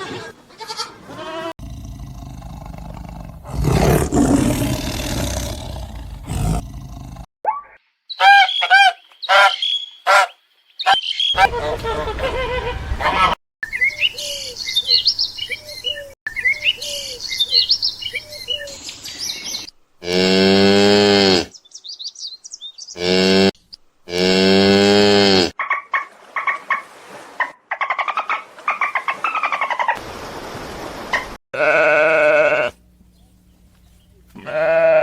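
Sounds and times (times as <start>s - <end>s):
small birds chirping: 13.6s - 19.7s, 21.5s - 23.0s, 33.0s - 34.4s
cow mooing: 31.6s - 32.8s, 34.4s - 35.0s.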